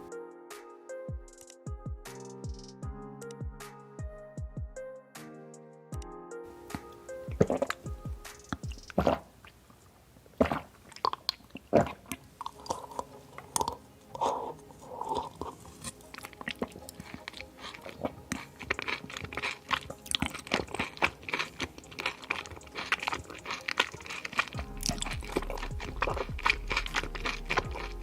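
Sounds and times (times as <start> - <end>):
chewing and crunching food: 7.3 - 28.0.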